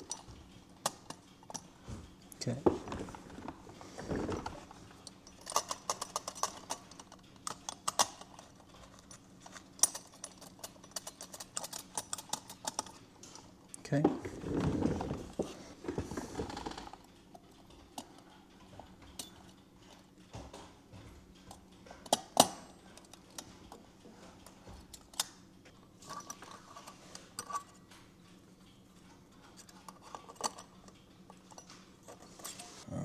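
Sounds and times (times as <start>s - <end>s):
small metallic clicks and taps: 5.2s - 13.5s, 16.6s - 32.6s.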